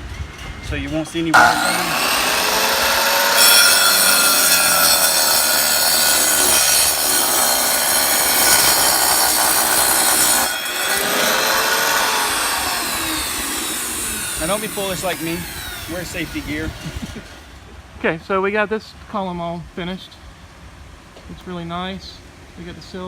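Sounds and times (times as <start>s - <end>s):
tile saw grinding through stone: 1.4s - 17.6s.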